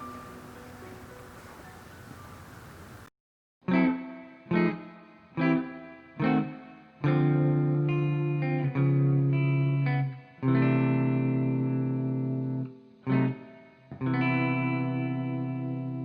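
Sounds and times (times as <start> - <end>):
guitar chords ringing out: 0.0 - 2.2, 3.7 - 16.0.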